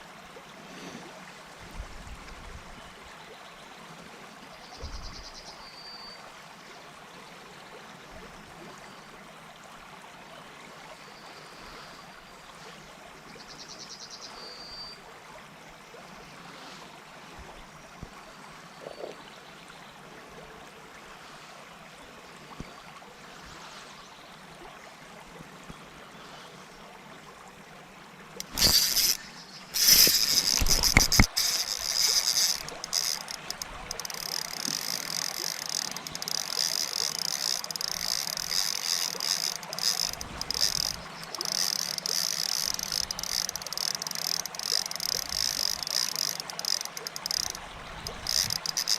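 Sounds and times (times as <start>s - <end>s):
river water flowing: 19.4s - 48.9s
fishing reel whirring: 28.4s - 48.9s.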